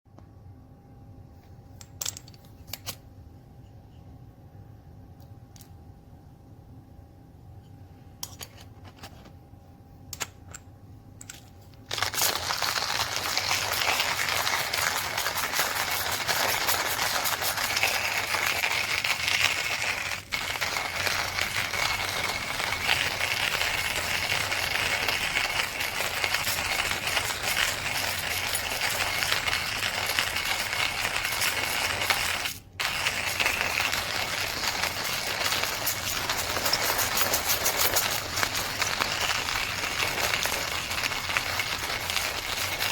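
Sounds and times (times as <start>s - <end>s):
coffee grinder grinding beans: 11.8s - 42.9s.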